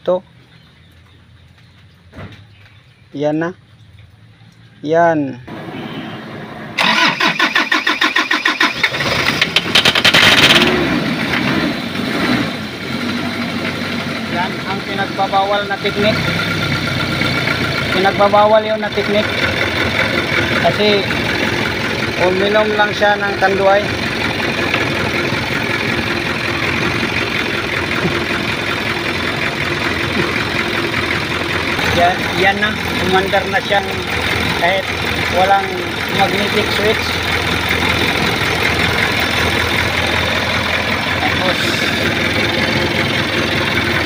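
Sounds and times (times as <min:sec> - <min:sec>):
diesel engine starting and idling: 0:05.5 - 0:44.0
diesel engine starter cranking: 0:06.8 - 0:11.6, 0:14.7 - 0:44.0.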